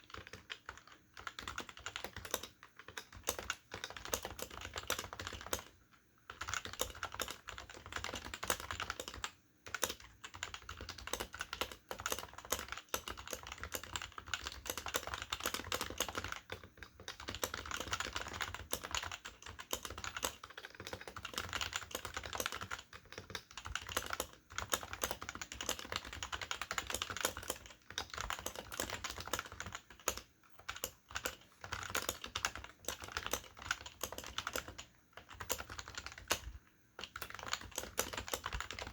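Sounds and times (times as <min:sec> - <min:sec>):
fast typing on keyboard: 0:00.0 - 0:38.9.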